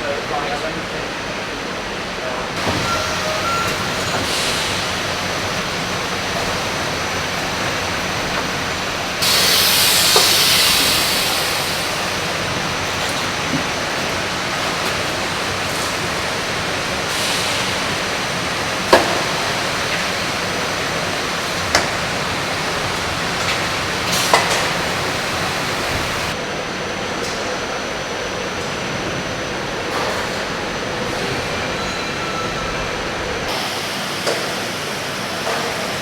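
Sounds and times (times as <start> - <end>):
grading line machinery rushing: 2.6 - 26.4.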